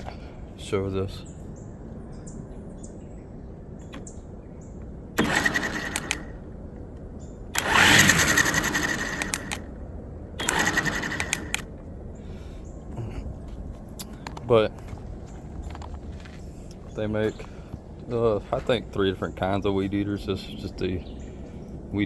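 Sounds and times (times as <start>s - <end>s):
string trimmer revving whine: 5.2s - 9.8s, 10.4s - 11.7s.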